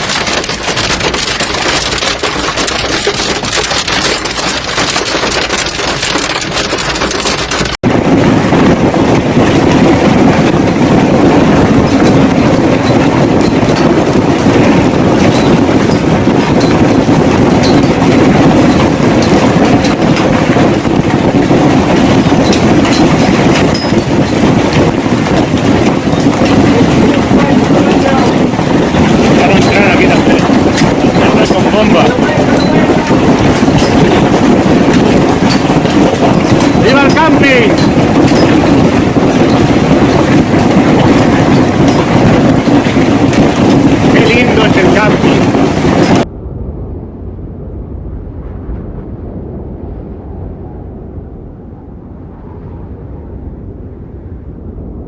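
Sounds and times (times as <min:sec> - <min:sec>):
hail pounding on hard surface: 0:00.0 - 0:07.8, 0:12.1 - 0:46.2.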